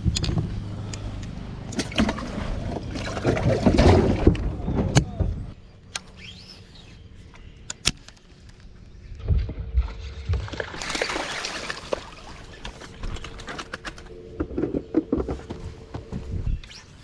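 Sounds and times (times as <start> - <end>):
low steady hum: 0.0 - 16.7
knocks and thumps on boat: 1.8 - 5.6.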